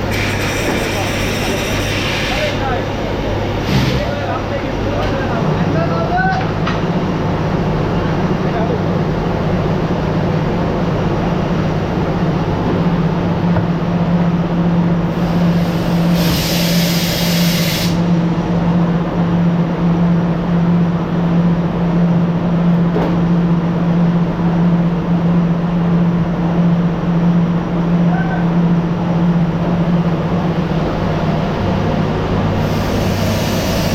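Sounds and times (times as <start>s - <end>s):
factory machinery drone: 0.0s - 33.9s
sharp hiss: 15.3s - 18.0s.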